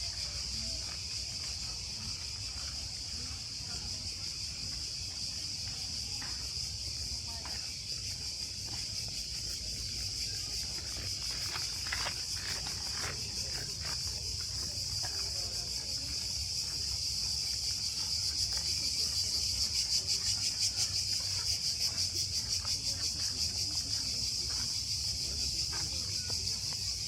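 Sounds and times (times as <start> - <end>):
cicadas buzzing: 0.0 - 27.0.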